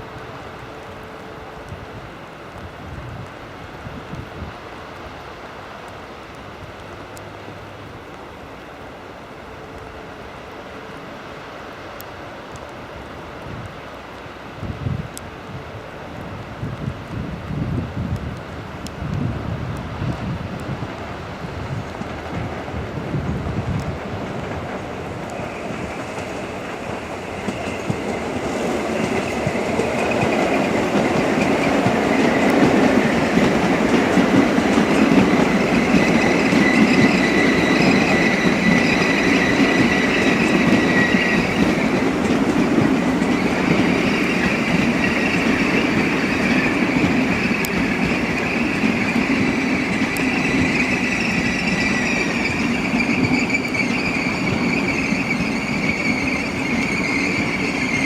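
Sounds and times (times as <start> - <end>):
train wheels rolling: 14.7 - 58.0
train wheels squealing on rails: 19.8 - 58.0.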